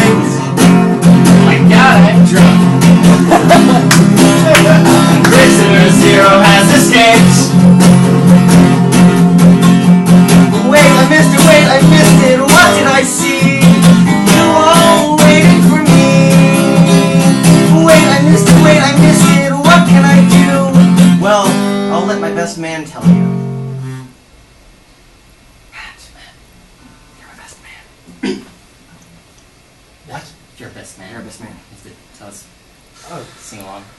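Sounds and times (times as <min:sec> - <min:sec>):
acoustic guitar strumming: 0:00.0 - 0:24.2.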